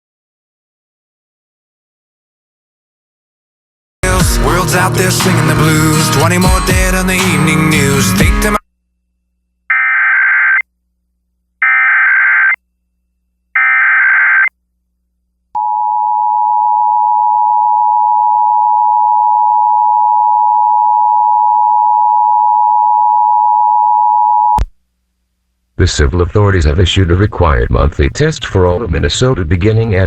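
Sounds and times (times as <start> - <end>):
digital data tone bursts: 13.6 - 14.5.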